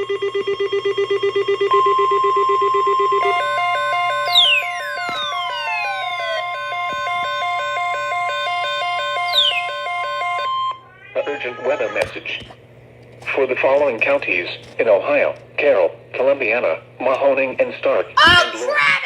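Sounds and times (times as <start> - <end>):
steady high alert beep: 2.9 - 10.8
electronic music: 3.3 - 10.4.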